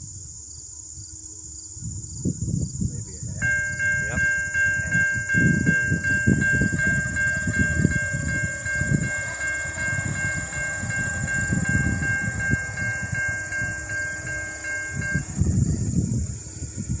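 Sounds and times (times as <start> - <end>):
low uneven rumble: 1.8 - 17.0
railroad crossing bell ringing: 3.4 - 17.0.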